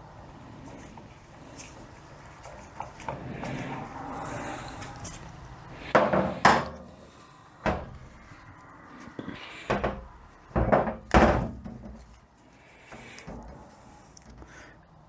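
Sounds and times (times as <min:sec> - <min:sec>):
tools and metal parts clunking: 0:05.8 - 0:08.6, 0:09.7 - 0:14.8.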